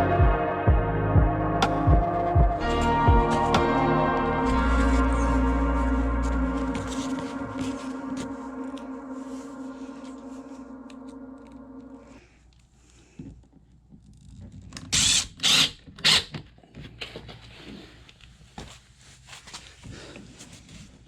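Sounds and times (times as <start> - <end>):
music with long held tones: 0.0 - 12.2.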